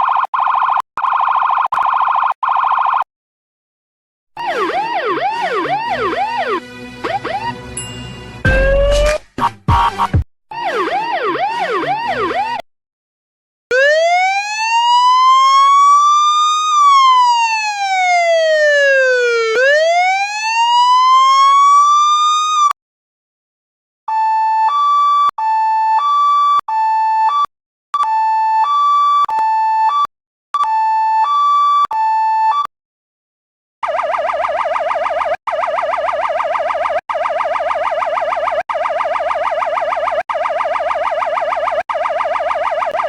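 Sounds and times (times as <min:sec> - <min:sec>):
police siren whoops: 0:04.4 - 0:07.6, 0:08.5 - 0:09.2, 0:10.5 - 0:12.6, 0:13.7 - 0:22.8, 0:24.1 - 0:27.4
two-tone hi-lo siren: 0:04.4 - 0:07.7, 0:08.5 - 0:09.2, 0:10.5 - 0:12.6, 0:13.7 - 0:22.8, 0:24.1 - 0:32.7, 0:33.8 - 0:43.0
police siren wail: 0:04.4 - 0:07.8, 0:08.5 - 0:09.2, 0:10.5 - 0:12.6, 0:13.7 - 0:22.8, 0:24.1 - 0:27.4, 0:33.8 - 0:43.0.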